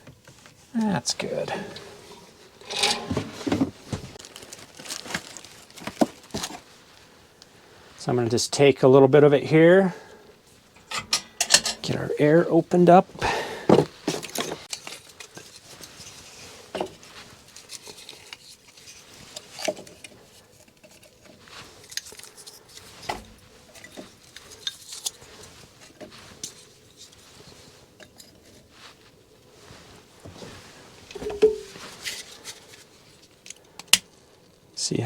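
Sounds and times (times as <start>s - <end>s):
clinks taps and scrapes at stove: 10.8s - 11.8s.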